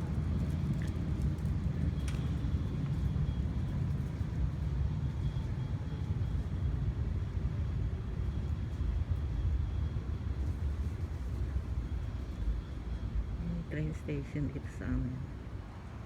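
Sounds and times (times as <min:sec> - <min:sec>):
low rumble of moving vehicle: 0:00.0 - 0:16.0.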